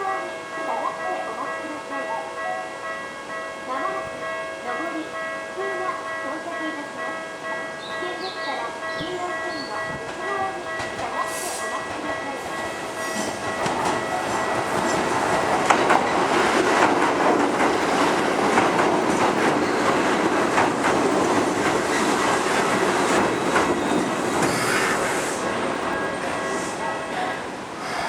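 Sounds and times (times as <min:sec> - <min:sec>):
train wheels clacking: 0:07.5 - 0:28.0.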